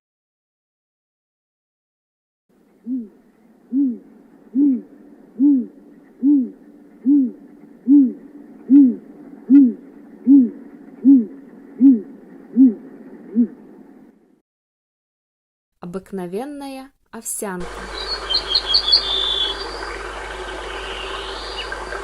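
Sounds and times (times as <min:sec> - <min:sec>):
owl hooting: 0:02.8 - 0:13.9, 0:17.6 - 0:22.0.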